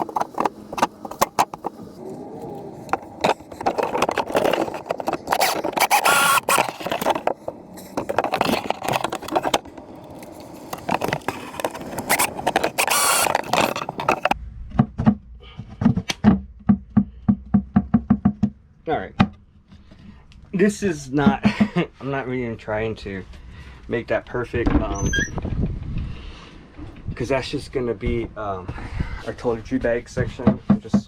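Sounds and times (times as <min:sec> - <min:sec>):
scraping and rattling: 0:00.0 - 0:14.4.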